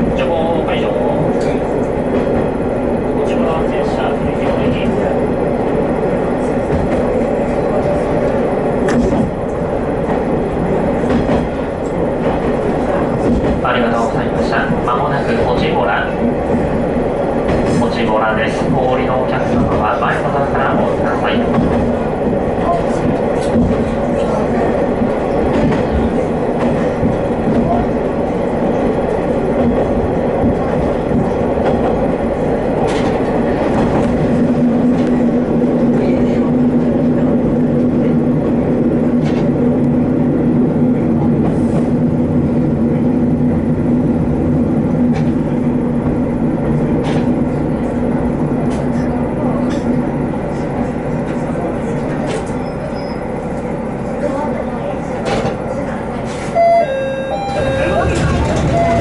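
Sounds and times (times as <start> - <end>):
railcar engine drone: 0.0 - 59.0
wheels on rail: 0.8 - 59.0
brief high sound: 56.5 - 59.0
diesel engine drone: 56.6 - 59.0.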